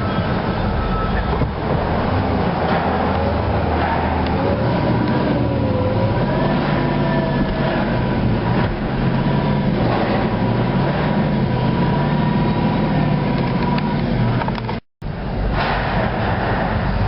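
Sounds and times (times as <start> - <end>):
diesel engine low drone: 0.0 - 17.0.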